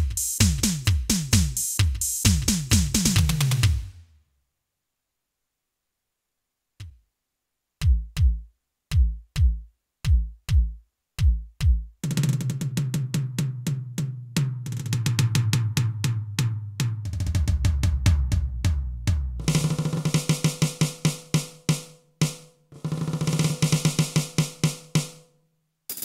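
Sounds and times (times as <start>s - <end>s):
bass drum: 7.8s - 21.1s.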